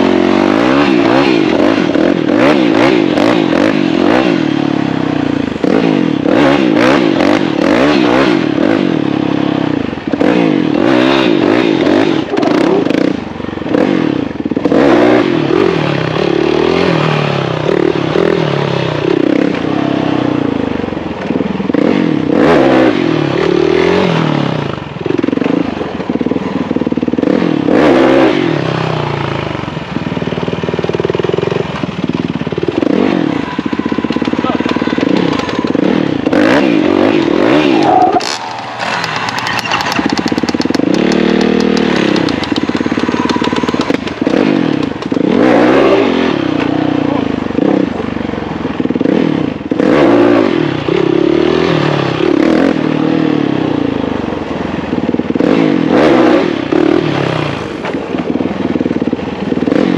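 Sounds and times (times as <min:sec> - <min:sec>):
motorcycle engine revving: 0:00.0 - 0:59.9
clatter: 0:29.9 - 0:46.8.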